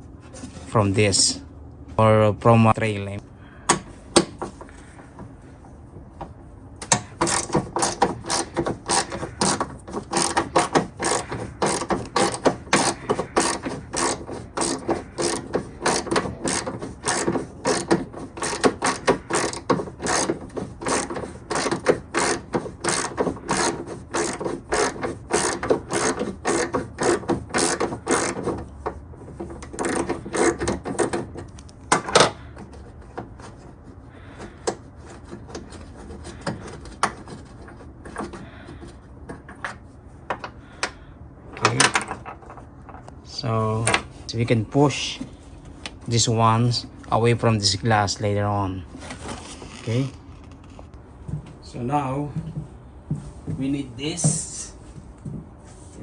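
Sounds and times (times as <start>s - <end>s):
ratchet wrench clicking: 6.8s - 28.4s.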